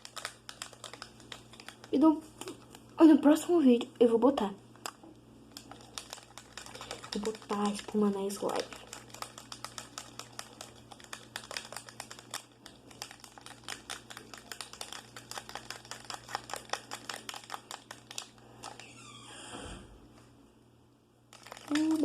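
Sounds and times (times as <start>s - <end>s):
spoon beating foam in pot: 5.6s - 18.2s.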